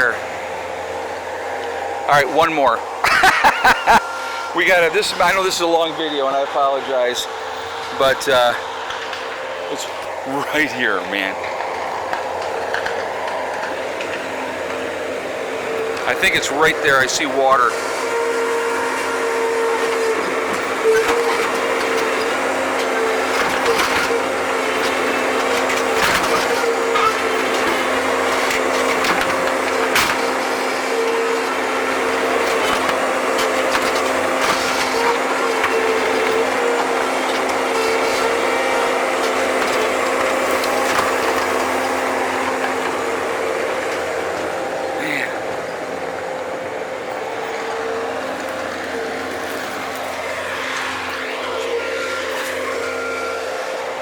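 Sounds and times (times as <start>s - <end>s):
constant whine: 0.0s - 54.0s
machine engine and hydraulics: 0.0s - 54.0s
skid-steer loader humming: 0.0s - 54.0s
clanks and scrapes of digging: 15.8s - 46.5s.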